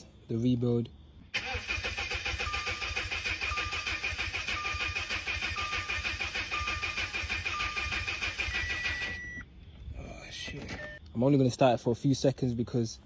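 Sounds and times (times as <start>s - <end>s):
car engine turning over: 1.4s - 9.4s
warning chime beeping: 4.5s - 9.4s.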